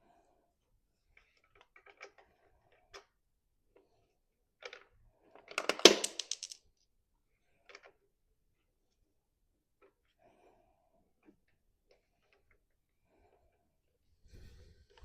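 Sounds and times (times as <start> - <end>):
metal parts clicking and knocking: 4.6 - 6.6.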